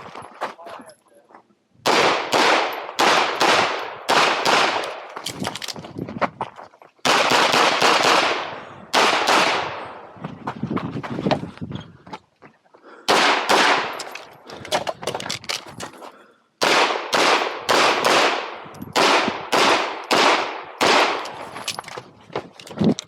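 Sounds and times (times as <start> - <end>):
pistol shots with echo: 1.8 - 5.1, 7.1 - 10.0, 13.1 - 14.1, 16.6 - 21.4.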